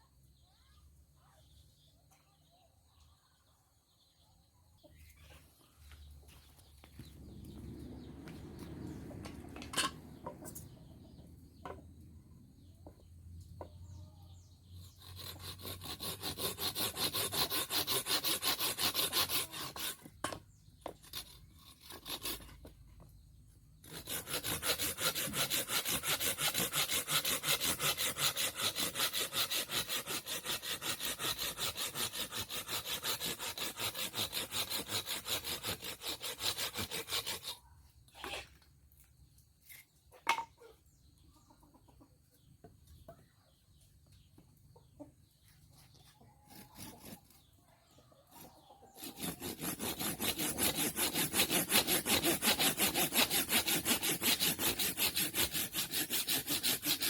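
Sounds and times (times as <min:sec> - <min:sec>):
hand saw cutting wood: 0:06.9 - 0:11.8, 0:13.6 - 0:38.7, 0:45.7 - 0:47.6, 0:48.4 - 0:57.0.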